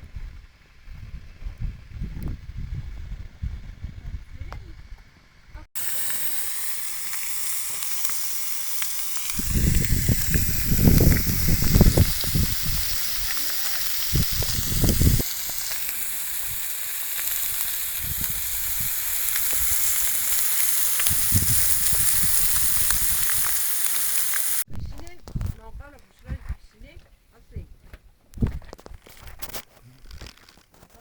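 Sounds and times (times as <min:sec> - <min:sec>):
chicken sizzling on hot stone: 0:05.7 - 0:24.7.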